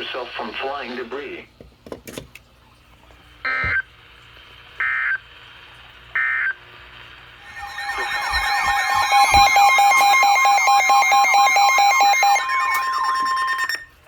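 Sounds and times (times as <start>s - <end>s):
buzzy data bursts: 7.4s - 13.6s
alert tone: 7.4s - 14.0s.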